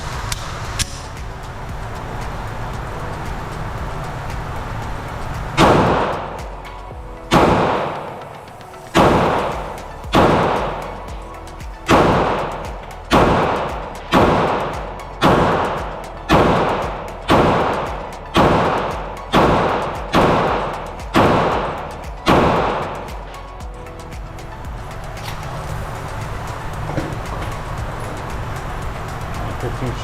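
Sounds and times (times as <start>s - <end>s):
pistol shots echoing: 5.6s - 6.4s, 7.3s - 8.4s, 9.0s - 10.8s, 11.9s - 23.0s.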